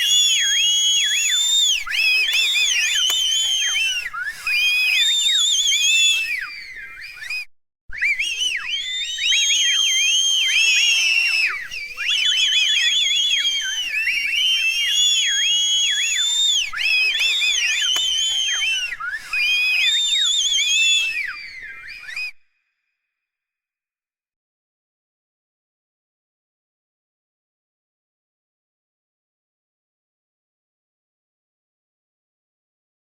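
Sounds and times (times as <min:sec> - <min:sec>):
crowd whistling: 0:00.0 - 0:22.5.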